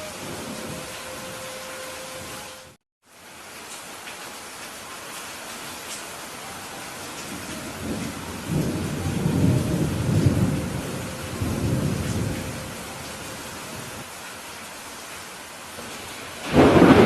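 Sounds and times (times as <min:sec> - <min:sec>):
thunder rumbling: 0:00.0 - 0:02.7, 0:07.2 - 0:14.0, 0:16.4 - 0:17.0
steady rain: 0:00.0 - 0:17.0.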